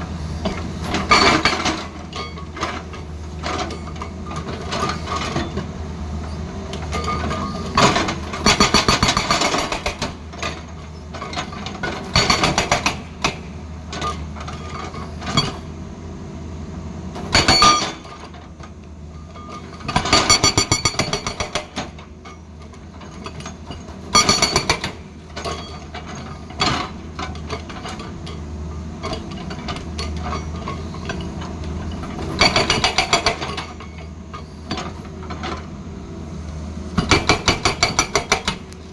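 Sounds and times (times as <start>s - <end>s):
diesel engine running: 0.0s - 20.2s, 21.2s - 38.9s
hydraulic breaker hammering stone: 0.4s - 2.8s, 6.9s - 10.7s, 11.3s - 13.5s, 17.3s - 18.1s, 19.9s - 22.0s, 23.2s - 27.0s, 32.3s - 34.0s, 37.0s - 38.7s.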